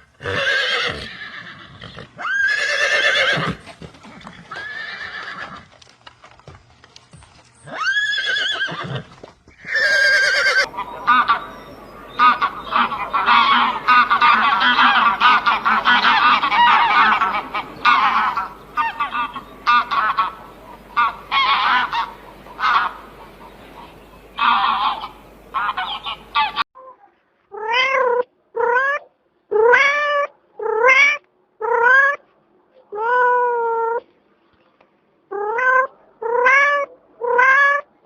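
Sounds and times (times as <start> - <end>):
geese honking: 9.8 - 26.6
cat meowing: 27.5 - 32.2, 35.3 - 37.8.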